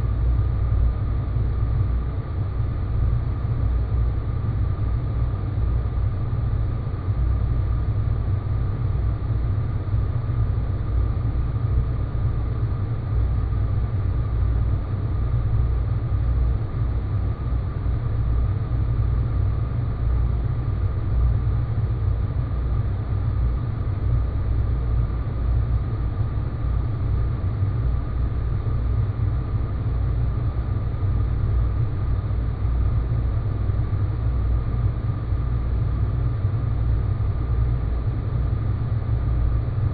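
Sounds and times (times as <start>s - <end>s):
faint high hum: 0.0s - 39.9s.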